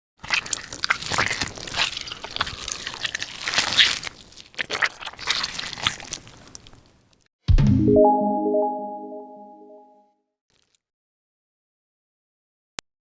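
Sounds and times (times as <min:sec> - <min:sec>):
crunching and crackling: 0:00.2 - 0:07.1.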